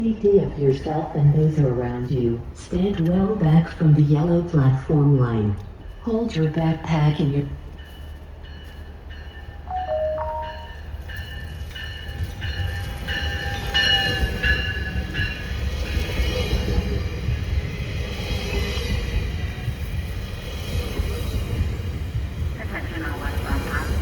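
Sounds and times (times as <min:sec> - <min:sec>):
train rumbling: 0:00.0 - 0:24.0
warning bell ringing: 0:08.6 - 0:14.7
brief pitched tone: 0:09.7 - 0:10.8.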